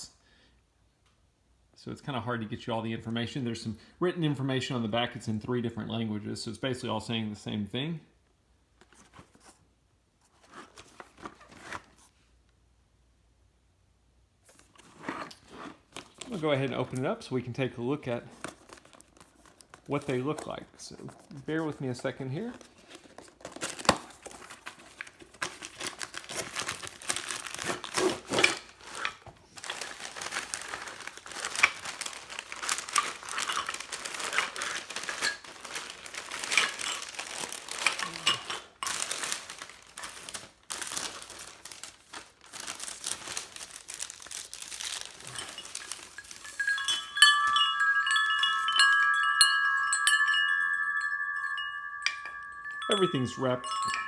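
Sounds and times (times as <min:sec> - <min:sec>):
packaging crinkling and rustling: 0:10.3 - 0:12.1, 0:14.5 - 0:54.0
wind chime tubes ringing: 0:45.2 - 0:54.0.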